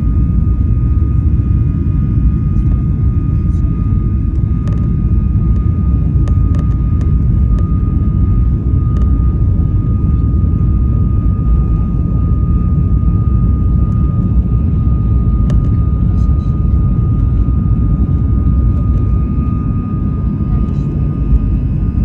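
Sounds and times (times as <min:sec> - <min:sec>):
jet engine cabin rumble: 0:00.0 - 0:22.0.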